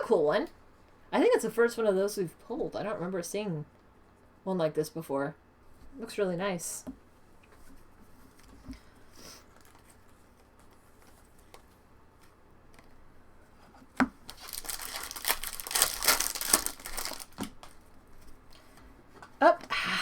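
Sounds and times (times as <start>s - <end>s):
faint handling sounds: 7.0s - 19.4s
wrapper tearing and crinkling: 14.2s - 17.8s.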